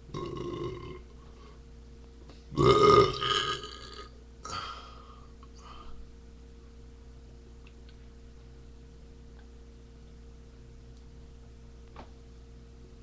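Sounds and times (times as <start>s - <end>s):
person burping: 0.1s - 1.1s, 2.5s - 5.0s.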